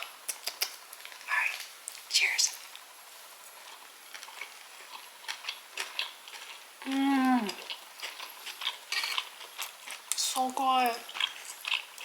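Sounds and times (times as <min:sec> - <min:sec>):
wet chewing sounds: 0:00.2 - 0:12.0
person humming mmm: 0:06.8 - 0:07.6.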